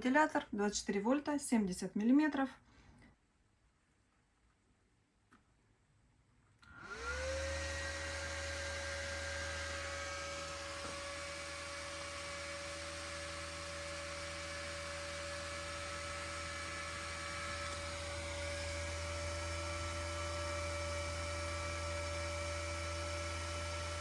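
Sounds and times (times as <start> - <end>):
cooling fan whirring: 6.7 - 24.0.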